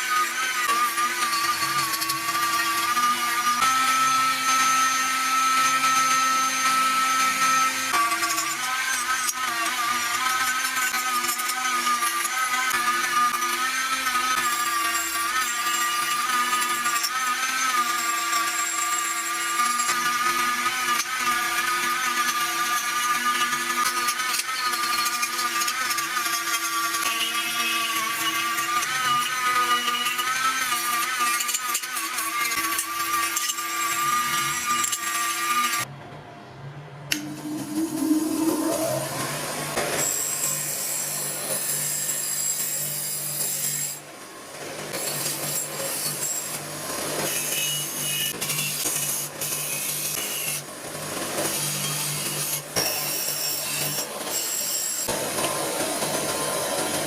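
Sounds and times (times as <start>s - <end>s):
electric power tool whining: 0.0s - 35.9s, 37.1s - 43.6s.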